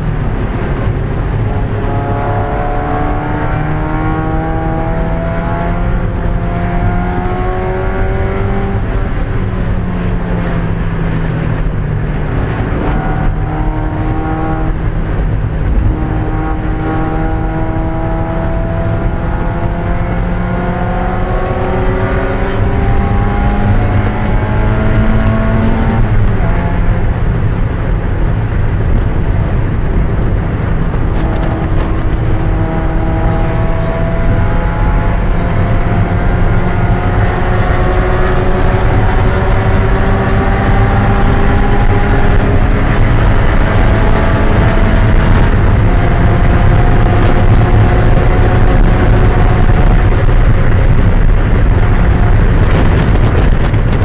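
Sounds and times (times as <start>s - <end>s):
car engine accelerating through gears: 0.0s - 54.0s.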